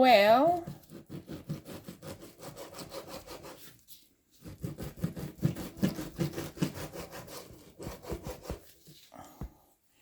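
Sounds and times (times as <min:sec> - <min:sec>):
knife sawing through raw meat: 0:00.7 - 0:03.7, 0:04.4 - 0:08.7.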